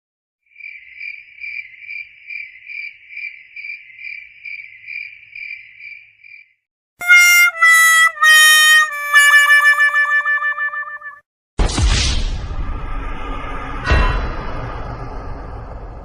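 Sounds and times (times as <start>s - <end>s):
cricket chirping: 0.5s - 6.6s
sad trombone jingle: 7.0s - 11.2s.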